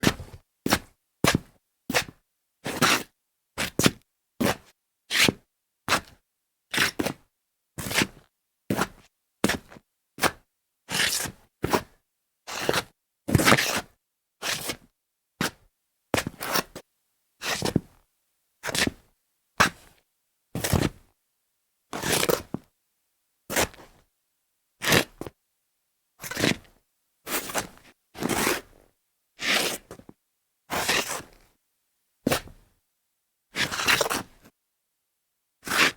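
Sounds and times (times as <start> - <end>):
shoe soles scuffing on tile: 23.5 - 24.0, 24.8 - 25.3, 27.3 - 28.8, 29.4 - 31.4, 32.3 - 32.6, 33.6 - 34.5.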